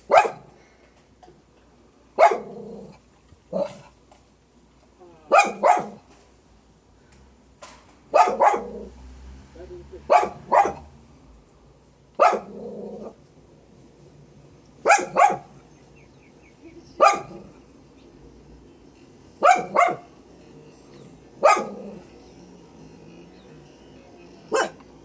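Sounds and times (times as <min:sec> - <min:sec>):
dog barking: 0:00.0 - 0:00.6, 0:02.2 - 0:02.7, 0:03.5 - 0:03.9, 0:05.3 - 0:06.1, 0:08.1 - 0:08.9, 0:10.1 - 0:10.9, 0:12.2 - 0:13.2, 0:14.8 - 0:15.6, 0:16.9 - 0:17.6, 0:19.4 - 0:20.2, 0:21.4 - 0:22.1, 0:24.5 - 0:24.9.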